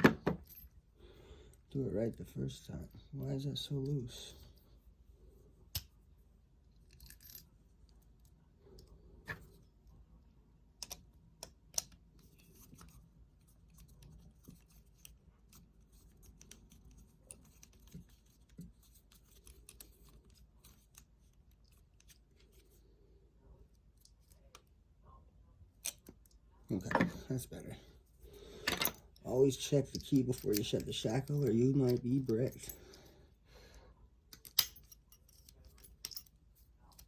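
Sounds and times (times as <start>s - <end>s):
padlock parts clicking and scraping: 5.3s - 25.0s, 25.6s - 27.4s, 28.0s - 33.1s, 34.1s - 37.0s.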